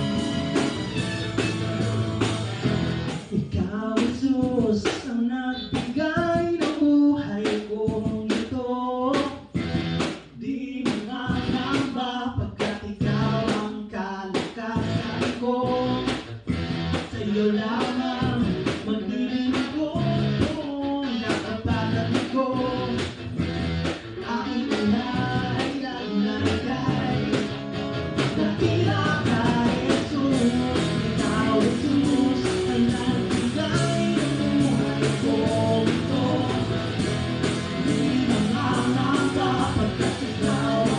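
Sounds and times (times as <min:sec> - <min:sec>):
band playing a song: 0:00.0 - 0:05.0, 0:09.1 - 0:10.3, 0:14.8 - 0:40.9
drums keeping a steady beat: 0:00.0 - 0:40.9
guitar: 0:00.0 - 0:40.9.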